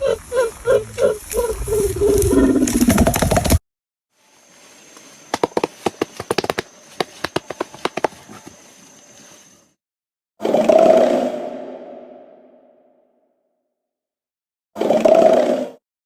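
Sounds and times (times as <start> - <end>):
faint hiss: 4.2 - 5.3
gorilla beating its chest: 5.3 - 8.5.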